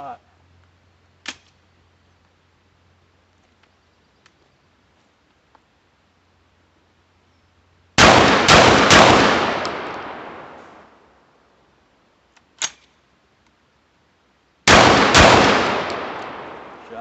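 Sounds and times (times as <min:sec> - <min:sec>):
shotgun shots echoing: 0:08.0 - 0:10.9, 0:14.7 - 0:17.0.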